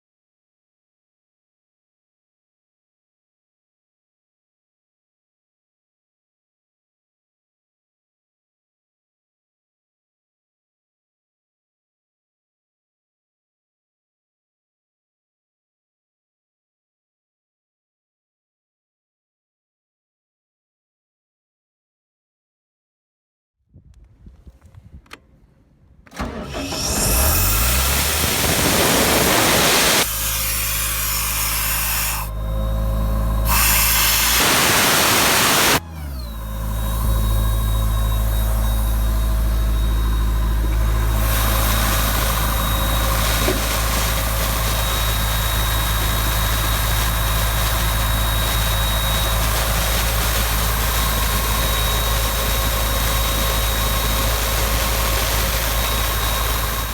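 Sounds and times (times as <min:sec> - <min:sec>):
diesel engine running: 0:26.1 - 0:56.9
compressed air hissing: 0:26.3 - 0:32.3, 0:33.5 - 0:35.8.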